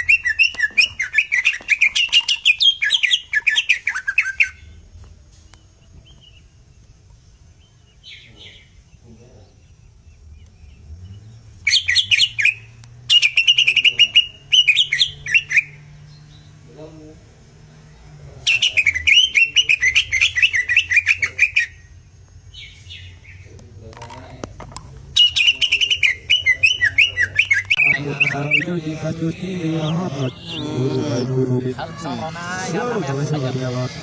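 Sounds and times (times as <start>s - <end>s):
bird chirping and trilling: 0.0s - 4.8s, 7.6s - 16.6s, 18.4s - 21.9s, 25.2s - 34.0s
man talking: 27.8s - 34.0s.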